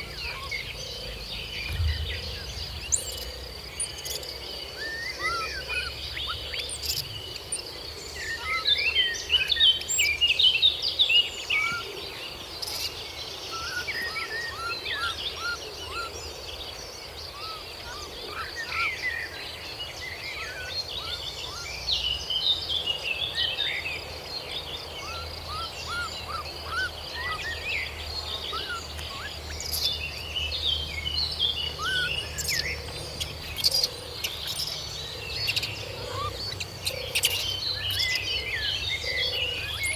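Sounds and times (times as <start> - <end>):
birds chirping: 0.0 - 15.4, 24.9 - 39.9
low rumble: 1.4 - 3.8
high-pitched insect drone: 2.4 - 4.6, 6.6 - 7.8, 12.6 - 12.9, 31.8 - 39.9.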